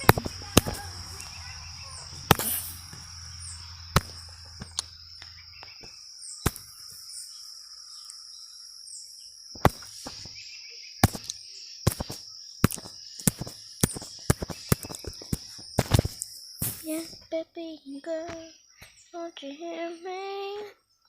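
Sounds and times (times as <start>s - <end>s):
birds chirping: 0.0s - 21.0s
insects droning: 0.0s - 21.0s
sharp clicks or knocks: 11.0s - 16.8s.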